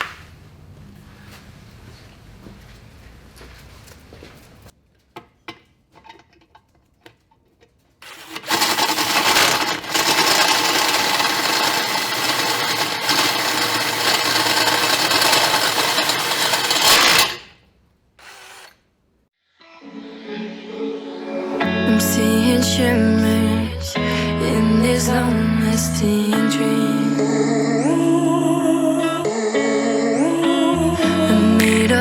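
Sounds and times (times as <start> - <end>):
handheld power tool running: 8.0 - 17.6, 18.2 - 18.8.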